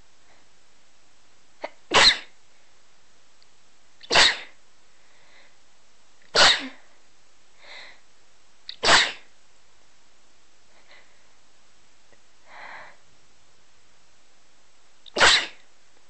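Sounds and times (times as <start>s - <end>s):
person sneezing: 1.6s - 2.4s, 4.0s - 4.6s, 6.4s - 6.9s, 8.7s - 9.3s, 15.1s - 15.6s.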